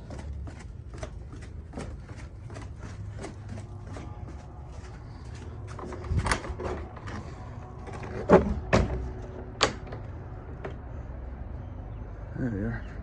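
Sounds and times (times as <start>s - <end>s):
shuffling footsteps: 0.0s - 7.9s.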